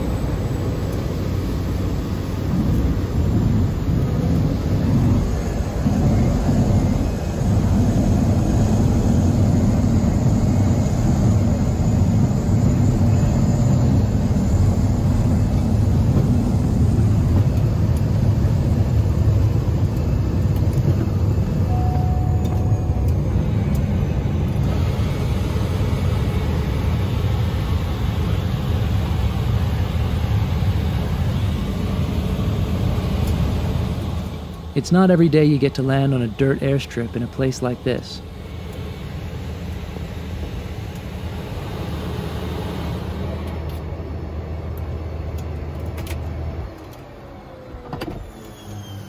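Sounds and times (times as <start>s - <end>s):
aircraft engine rumble: 0.0s - 49.0s
short beep: 21.7s - 23.2s.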